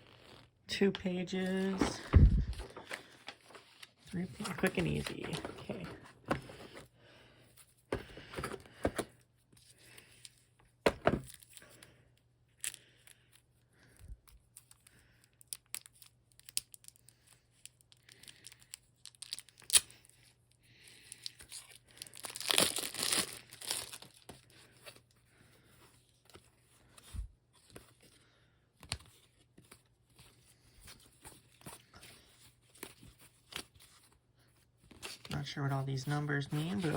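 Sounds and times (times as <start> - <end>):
packaging crinkling or tearing: 15.4 - 20.1, 21.0 - 24.4.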